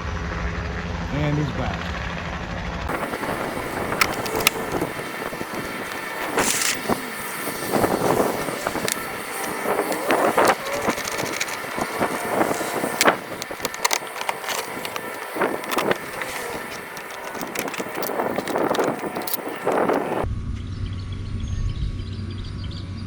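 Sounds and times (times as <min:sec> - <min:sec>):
metal parts clanking and rattling: 0:02.9 - 0:20.2.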